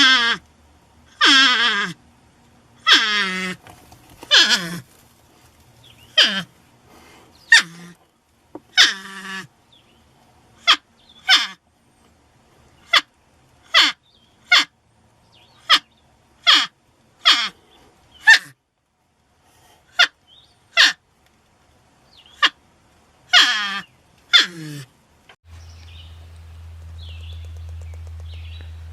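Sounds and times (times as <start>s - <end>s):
porcupine squealing: 0.0s - 0.4s, 1.1s - 2.0s, 2.8s - 3.6s, 4.2s - 4.8s, 6.1s - 6.5s, 7.5s - 8.0s, 8.7s - 9.5s, 10.6s - 11.6s, 13.7s - 14.7s, 15.6s - 17.6s, 18.2s - 18.5s, 23.3s - 24.8s.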